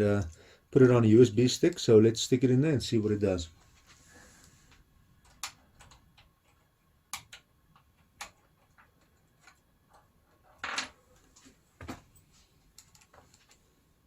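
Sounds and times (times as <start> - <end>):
hands clicking on console: 5.2 - 6.4, 7.1 - 8.9.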